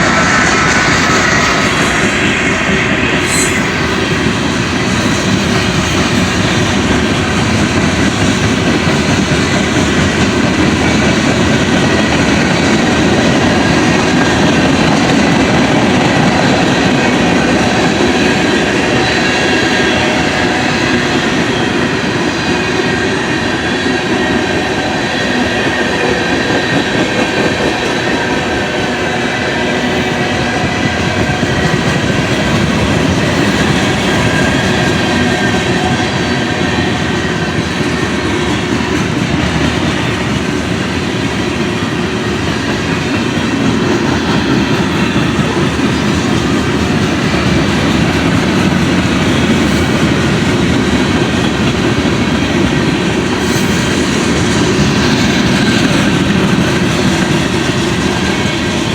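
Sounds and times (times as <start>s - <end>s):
high-pitched squeal: 0.0s - 6.6s, 11.8s - 40.3s
train wheels rumbling on rails: 0.0s - 58.9s.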